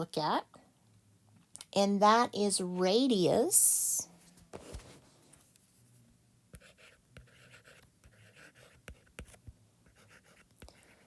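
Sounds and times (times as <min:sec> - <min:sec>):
pen scratching while writing: 0:06.6 - 0:11.0.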